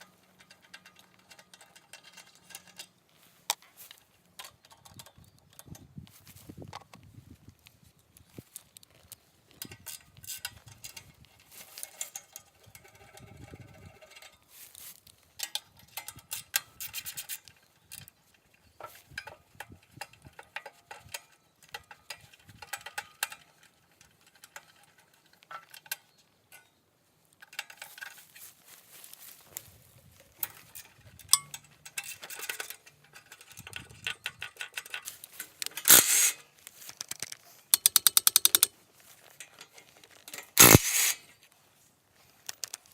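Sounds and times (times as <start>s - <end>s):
hand tools clinking on engine parts: 0.0s - 5.8s, 27.4s - 41.4s
ratchet wrench clicking: 31.2s - 38.7s, 40.4s - 41.3s.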